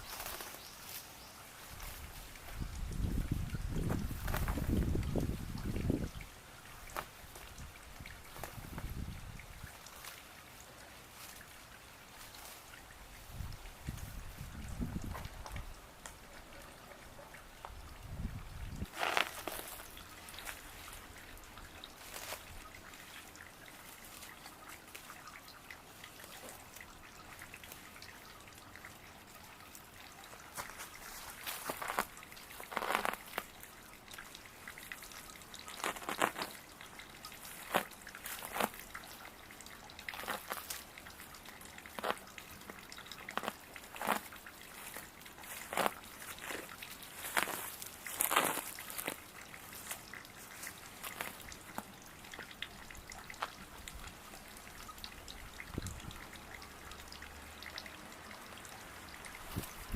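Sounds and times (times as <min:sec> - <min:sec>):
irregular crackles: 0:00.0 - 0:01.1, 0:18.8 - 0:28.1, 0:30.2 - 0:55.6
water trickling and splashing: 0:00.0 - 0:59.9.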